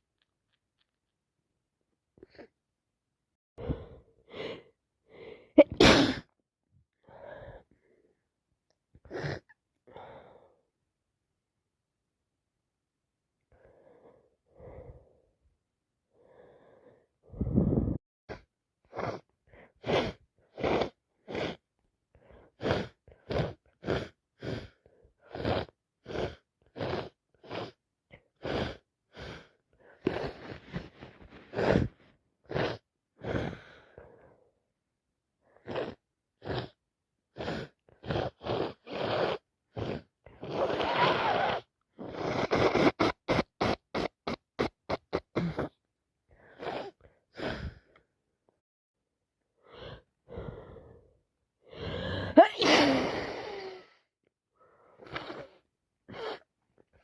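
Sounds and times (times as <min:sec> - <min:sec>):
person sniffing through congested nose: 0:05.6 - 0:06.3, 0:09.1 - 0:09.5, 0:18.9 - 0:21.7, 0:22.5 - 0:27.8, 0:28.4 - 0:33.8, 0:35.6 - 0:45.8, 0:46.4 - 0:47.9, 0:51.7 - 0:54.0, 0:54.8 - 0:56.5.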